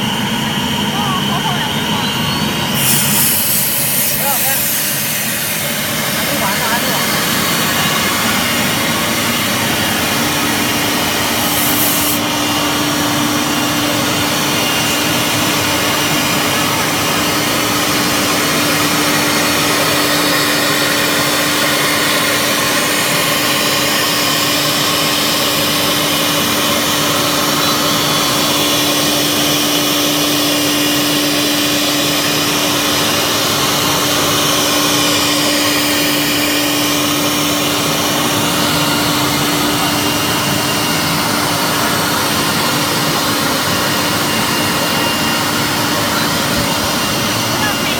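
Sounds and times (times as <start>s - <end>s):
wood router cutting wood: 0.0s - 47.9s.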